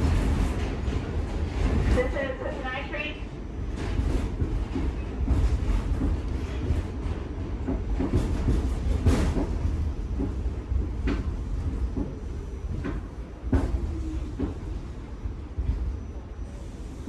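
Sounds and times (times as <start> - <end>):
subway train rumbling on track: 0.0 - 17.0
wheels clunking and rattling: 3.7 - 14.6.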